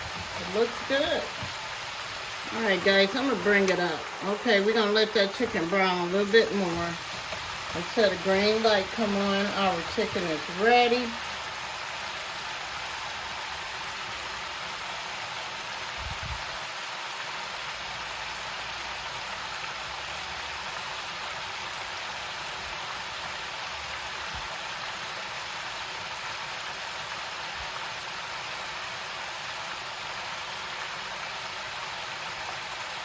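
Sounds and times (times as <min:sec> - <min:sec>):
chicken deep-frying sizzle: 0:00.0 - 0:33.0.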